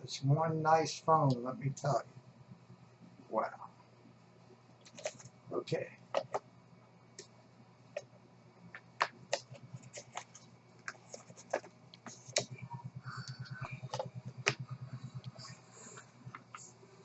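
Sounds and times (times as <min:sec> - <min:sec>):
pulsing low hum: 0:09.5 - 0:17.0.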